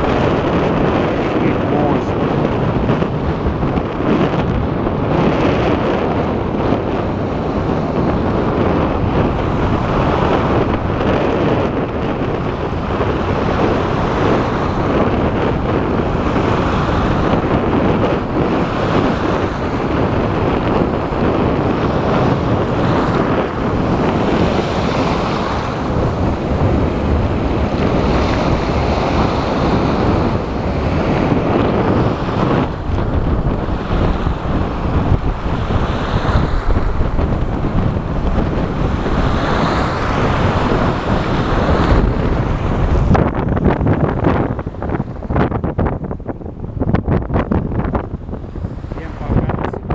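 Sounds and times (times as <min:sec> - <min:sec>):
sea surf washing onto shore: 0:00.0 - 0:49.9
strong wind buffeting microphone: 0:00.0 - 0:49.9.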